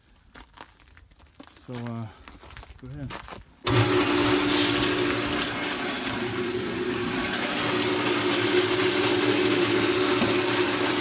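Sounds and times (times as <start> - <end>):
concrete mixer churning: 3.6 - 11.0.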